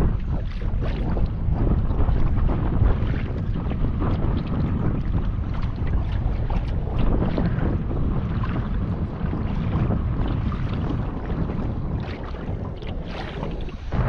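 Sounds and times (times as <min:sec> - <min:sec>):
water noise from boat: 0:00.0 - 0:14.0
wind buffeting microphone: 0:00.0 - 0:14.0.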